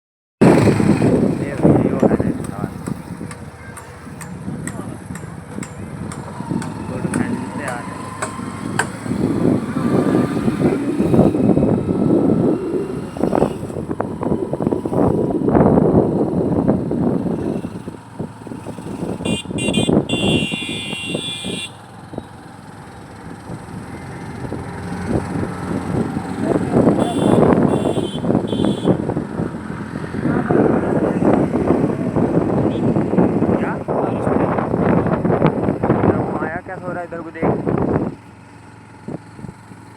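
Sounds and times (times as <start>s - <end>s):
vehicles rumbling past: 0.4s - 39.9s
car horn: 19.2s - 21.9s, 26.8s - 29.1s.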